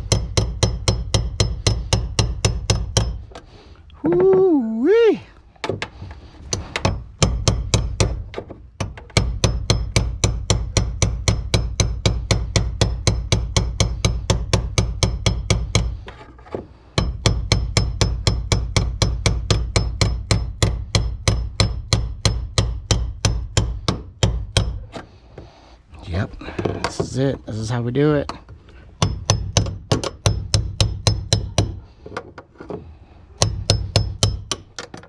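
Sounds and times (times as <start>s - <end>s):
rapid hammer blows on metal: 0.0s - 3.3s, 6.7s - 16.0s, 29.0s - 31.9s, 33.4s - 34.7s.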